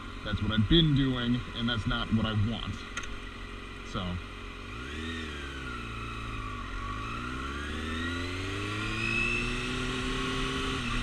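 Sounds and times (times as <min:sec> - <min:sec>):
motorcycle engine accelerating: 0:00.0 - 0:11.0.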